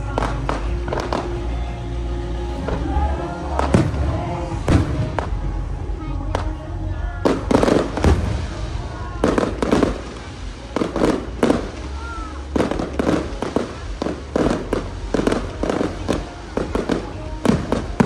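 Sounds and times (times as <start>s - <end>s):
fireworks bangs: 0.0s - 1.5s, 3.5s - 5.7s, 7.2s - 18.0s.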